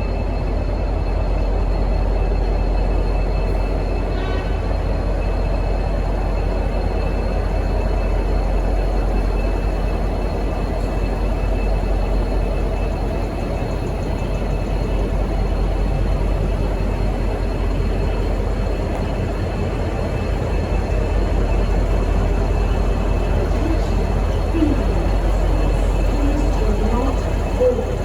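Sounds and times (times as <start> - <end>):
deep locomotive engine rumble: 0.0 - 28.0
faint high whine: 0.0 - 28.0.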